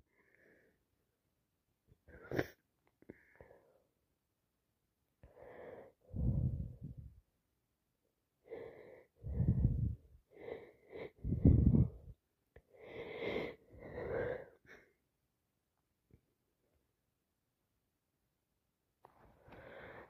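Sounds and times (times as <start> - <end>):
wheezy breathing: 8.5 - 14.9.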